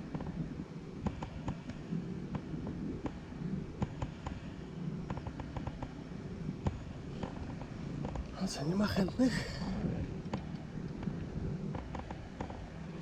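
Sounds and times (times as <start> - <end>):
outdoor background rumble: 0.0 - 13.0
light irregular clicks: 1.0 - 6.0, 10.2 - 12.7.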